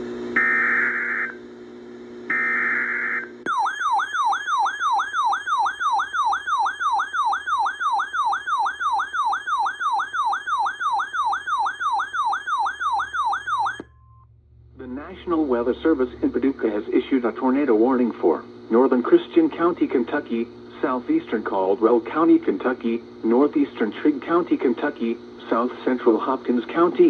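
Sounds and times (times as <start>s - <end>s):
siren-like attention tone: 0.4s - 1.4s, 2.3s - 16.4s.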